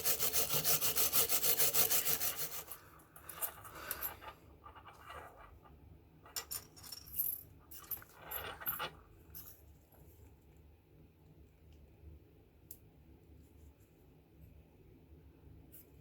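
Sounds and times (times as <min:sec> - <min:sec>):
metallic clinks and scrapes: 0:01.8 - 0:05.6, 0:06.2 - 0:10.1.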